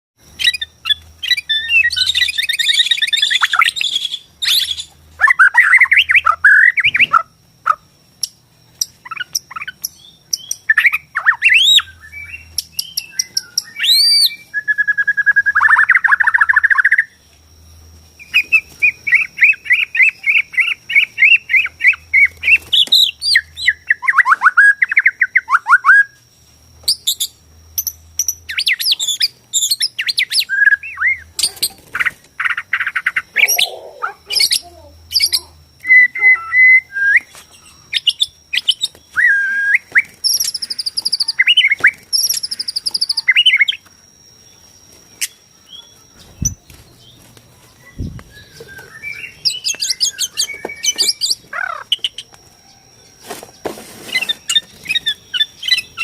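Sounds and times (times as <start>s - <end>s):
bird singing varied whistling song: 0.3s - 17.2s, 18.2s - 26.2s, 26.8s - 53.2s, 54.1s - 56.0s.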